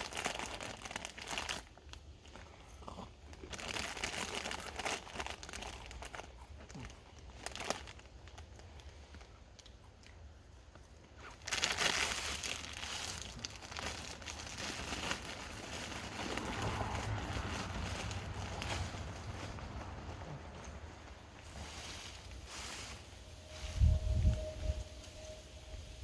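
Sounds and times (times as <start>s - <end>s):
chip bag crinkling: 0.0s - 2.6s, 3.2s - 10.1s, 10.7s - 20.0s.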